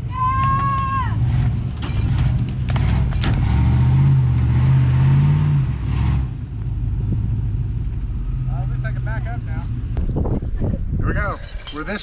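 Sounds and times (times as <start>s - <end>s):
truck engine revving: 1.1s - 10.0s.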